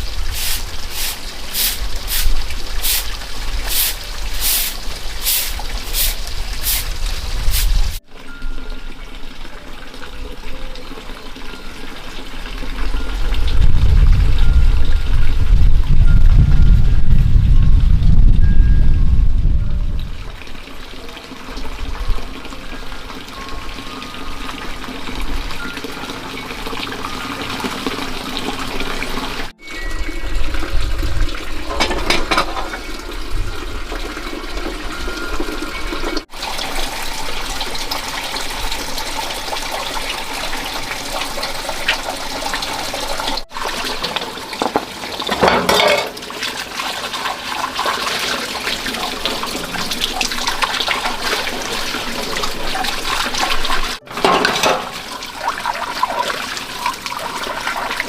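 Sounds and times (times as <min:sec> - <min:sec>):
water running and splashing: 0:00.0 - 0:08.1, 0:20.0 - 0:58.0.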